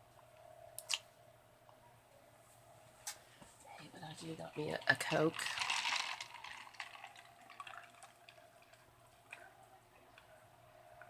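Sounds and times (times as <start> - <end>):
fizzing of carbonated drink: 4.5 - 8.9.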